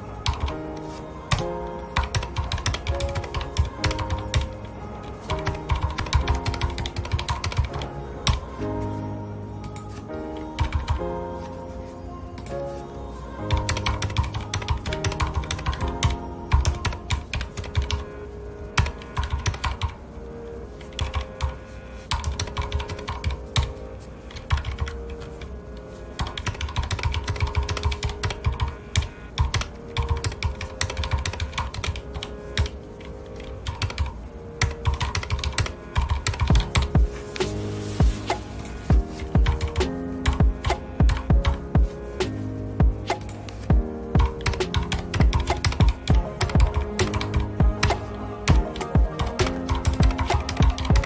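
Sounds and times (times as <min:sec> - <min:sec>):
soft background music: 0:00.0 - 0:51.0
mechanical keyboard typing: 0:02.0 - 0:04.5, 0:05.4 - 0:08.4, 0:18.8 - 0:20.0, 0:22.1 - 0:23.7, 0:24.3 - 0:25.2, 0:26.2 - 0:32.8, 0:33.6 - 0:36.9, 0:44.2 - 0:51.0.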